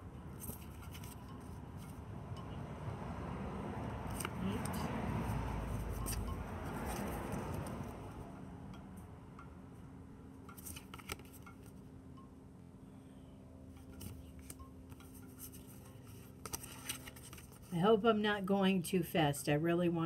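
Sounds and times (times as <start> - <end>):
faint low hum: 0.0 - 20.0
cards clicking and snapping: 10.6 - 11.5, 16.4 - 17.7.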